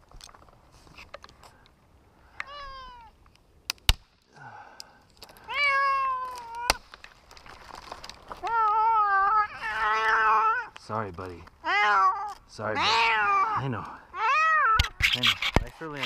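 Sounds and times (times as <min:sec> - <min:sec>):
cat meowing: 0:02.4 - 0:03.1, 0:05.5 - 0:06.7, 0:08.4 - 0:10.8, 0:11.6 - 0:15.1.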